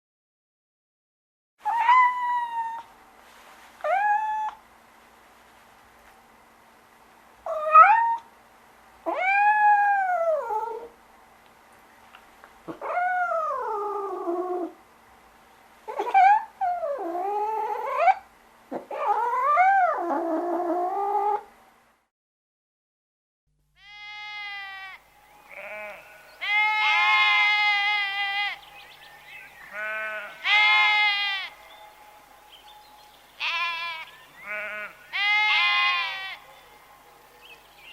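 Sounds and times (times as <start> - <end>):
animal wailing: 23.8 - 28.7, 29.7 - 31.6, 33.4 - 36.6.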